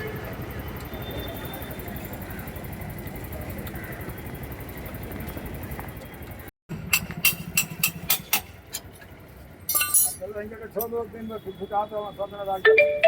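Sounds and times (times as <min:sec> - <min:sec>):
sharp metallic clinks: 0:09.7 - 0:11.1.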